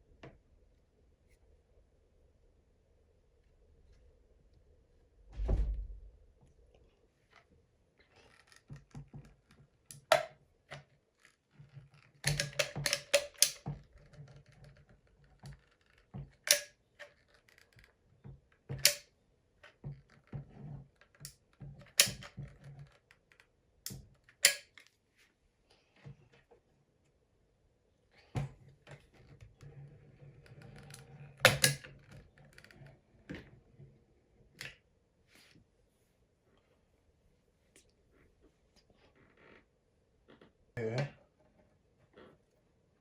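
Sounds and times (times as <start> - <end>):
dull thump: 5.3 - 6.1.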